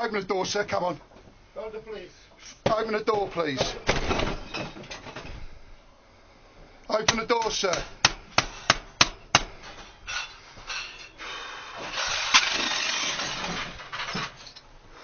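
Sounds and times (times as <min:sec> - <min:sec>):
door banging: 0:02.7 - 0:05.4
door scraping and rattling: 0:11.8 - 0:14.6.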